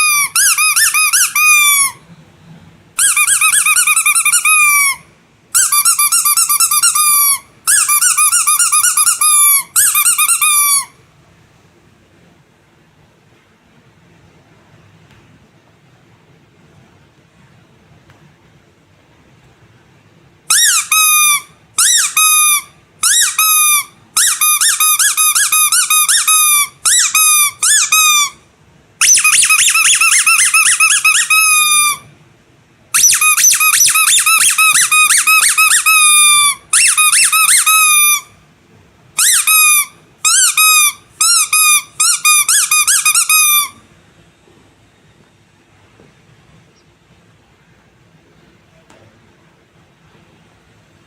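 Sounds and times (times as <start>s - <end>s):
squeaky toys squeaking: 0.0s - 2.0s, 3.0s - 11.0s, 20.5s - 28.4s, 29.0s - 32.1s, 33.0s - 38.4s, 39.2s - 43.8s.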